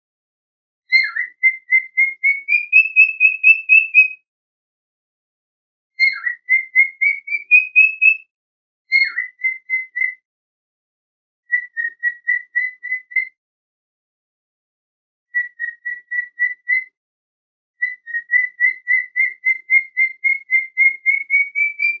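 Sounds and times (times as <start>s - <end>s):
cockatiel chirping: 0.9s - 4.2s, 6.0s - 8.2s, 8.9s - 10.2s, 11.5s - 13.3s, 15.3s - 16.9s, 17.8s - 22.0s.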